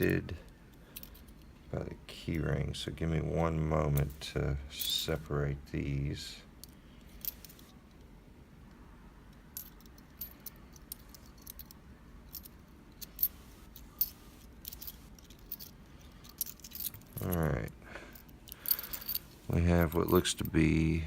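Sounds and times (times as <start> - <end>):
keys jingling on a key ring: 6.6 - 7.7, 9.6 - 17.5, 18.1 - 20.6.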